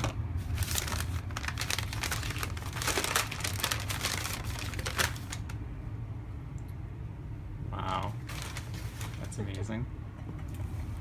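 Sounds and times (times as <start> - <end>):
paper wrapping crinkling: 0.0 - 5.6, 8.2 - 9.4.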